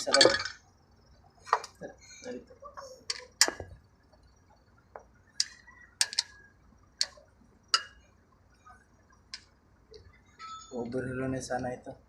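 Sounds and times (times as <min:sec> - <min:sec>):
metallic clinks of engine parts: 0:00.0 - 0:00.8, 0:05.4 - 0:08.3.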